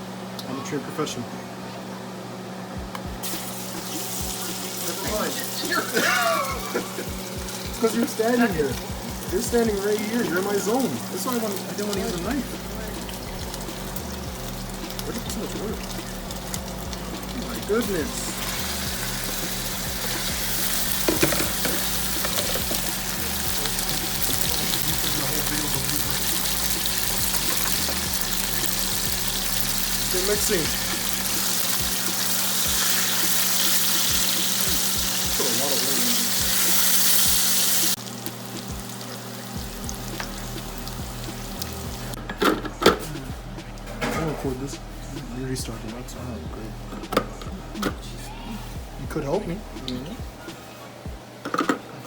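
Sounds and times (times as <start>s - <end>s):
food sizzling in oil: 3.2s - 42.2s
utensil knocking: 6.6s - 29.2s
low hum: 12.0s - 32.0s, 39.6s - 50.5s.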